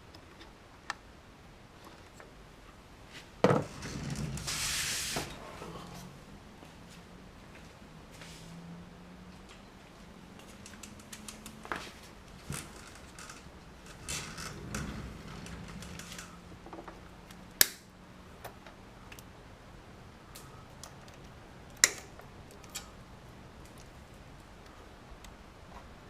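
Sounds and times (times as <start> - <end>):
faint steady hum: 0.0 - 26.0
plastic connectors clicking and rattling: 10.4 - 11.6
sharp loud clicks: 17.6 - 17.9.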